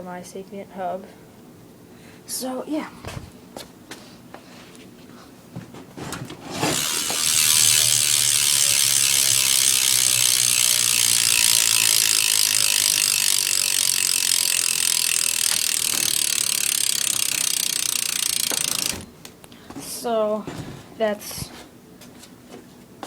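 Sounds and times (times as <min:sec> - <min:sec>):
bicycle hub freewheel clicking: 0:06.6 - 0:19.2.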